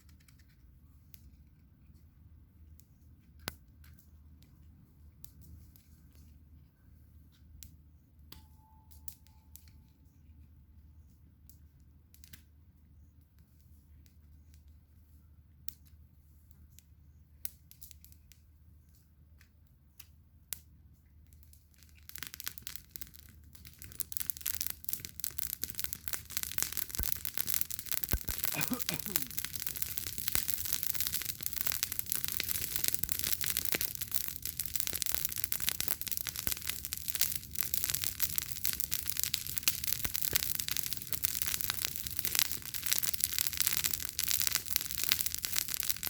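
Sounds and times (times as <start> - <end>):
campfire crackling: 16.6 - 46.0.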